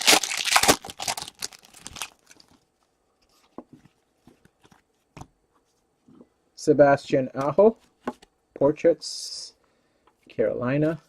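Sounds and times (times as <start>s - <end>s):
foil wrapper crinkling: 0.0s - 2.6s.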